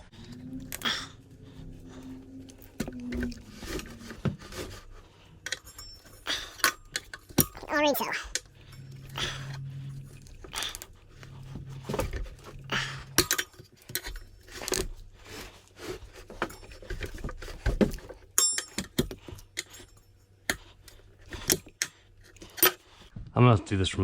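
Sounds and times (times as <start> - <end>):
tire irons clinking on wheel rim: 0.3 - 7.7, 16.0 - 23.1.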